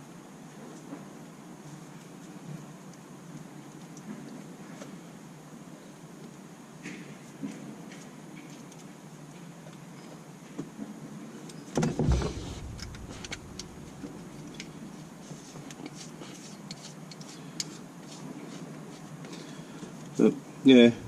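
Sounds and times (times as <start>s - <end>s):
dull thump: 11.8s - 15.1s.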